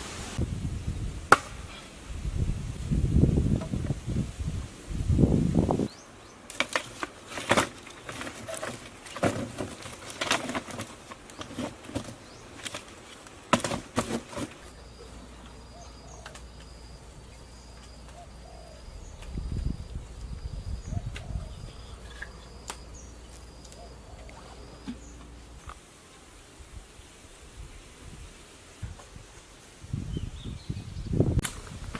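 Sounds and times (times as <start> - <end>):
rustling: 6.5 - 14.8
faint steady hum: 10.6 - 31.7
insect chirping in pulses: 14.7 - 25.6.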